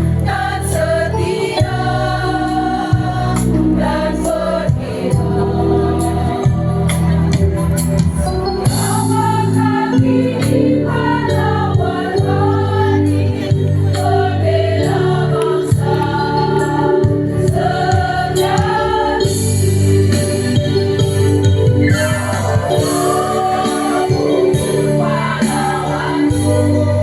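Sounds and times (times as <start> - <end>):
choir singing: 0.0 - 7.7, 8.5 - 27.0
instrumental accompaniment: 0.0 - 27.0.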